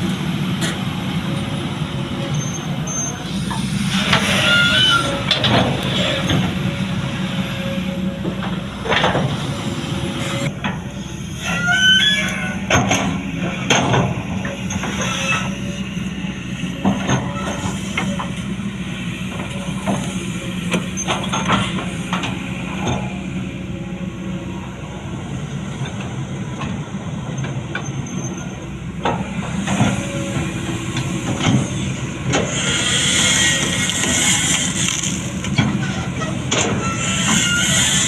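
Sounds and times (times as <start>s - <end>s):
excavator diesel engine running: 0.0s - 38.0s
rushing hiss: 32.4s - 35.4s.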